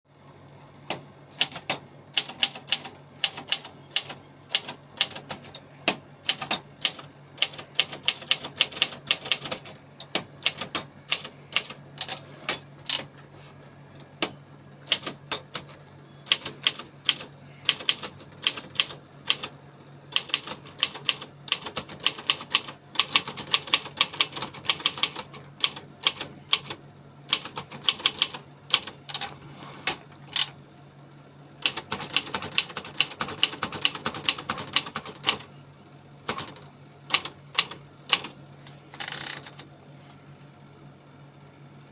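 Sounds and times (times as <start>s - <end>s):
typewriter key strikes: 0.9s - 13.0s, 14.2s - 19.5s, 36.3s - 38.3s.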